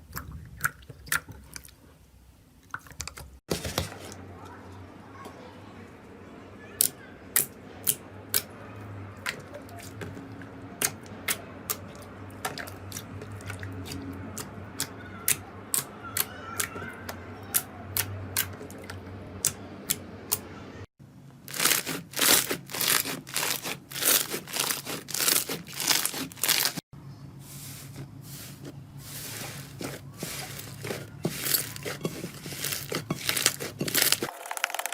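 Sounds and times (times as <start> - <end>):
slime crackling and crunching: 21.5 - 26.8, 27.6 - 34.9.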